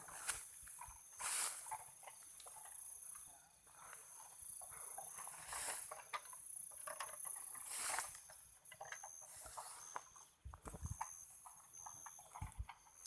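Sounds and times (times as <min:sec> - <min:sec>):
night insects trilling: 0:00.0 - 0:13.0
rustling through undergrowth: 0:00.0 - 0:13.0
twigs crackling: 0:00.0 - 0:13.0
swishes of vegetation: 0:01.2 - 0:01.7.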